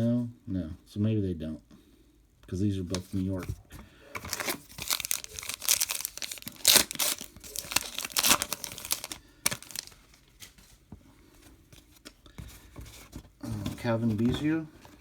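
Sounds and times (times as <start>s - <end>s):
wrapper tearing and crinkling: 4.2s - 10.2s.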